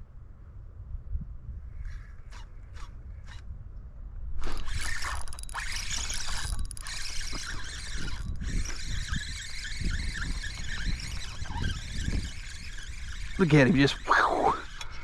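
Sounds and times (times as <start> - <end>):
wind on microphone: 0.0 - 15.0.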